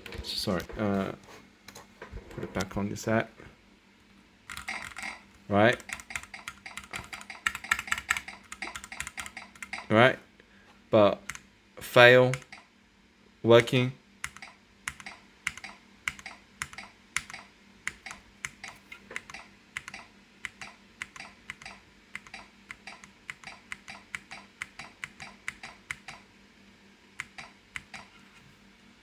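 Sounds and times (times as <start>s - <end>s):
keyboard key clicking: 5.8s - 9.8s.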